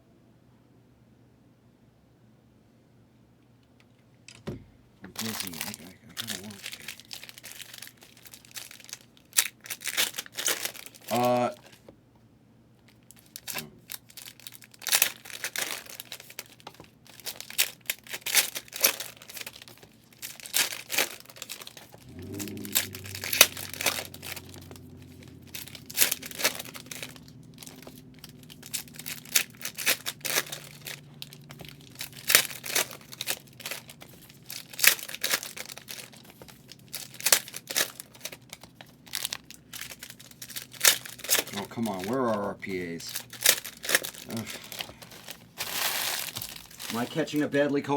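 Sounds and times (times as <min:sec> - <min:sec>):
card pack wrappers tearing: 0:05.2 - 0:11.8, 0:13.1 - 0:47.8.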